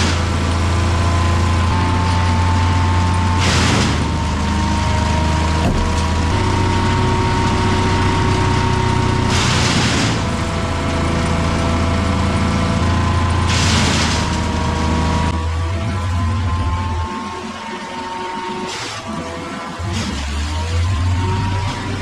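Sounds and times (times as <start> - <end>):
woodchipper running: 5.6 - 6.6.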